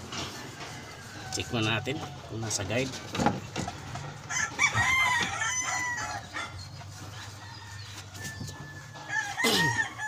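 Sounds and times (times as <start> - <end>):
rooster crowing: 4.2 - 10.0.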